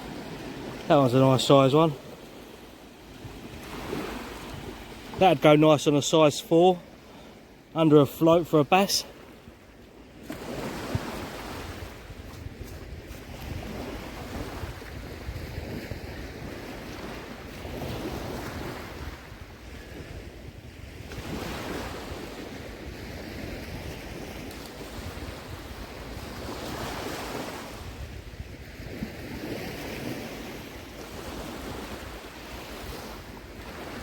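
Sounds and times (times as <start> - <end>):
waves washing onto sandy beach: 0.0 - 34.0
wind rumble on microphone: 10.7 - 34.0.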